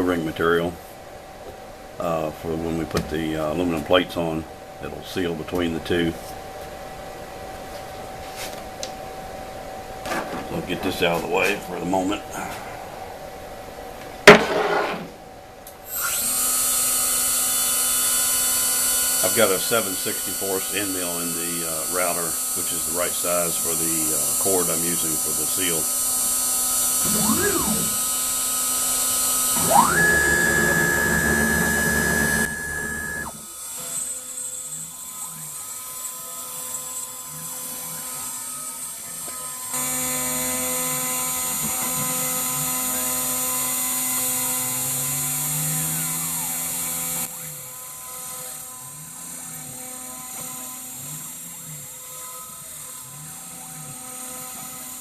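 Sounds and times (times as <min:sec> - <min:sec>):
router cutting plastic: 0:15.9 - 0:55.0
router spindle whine: 0:15.9 - 0:55.0
gliding motor whines: 0:24.3 - 0:40.1.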